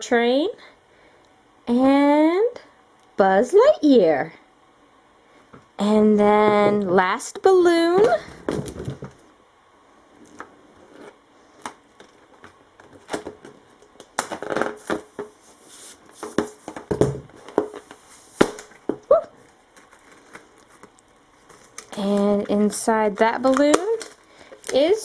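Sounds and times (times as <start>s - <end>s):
balloon rustling and tearing: 14.0s - 18.8s.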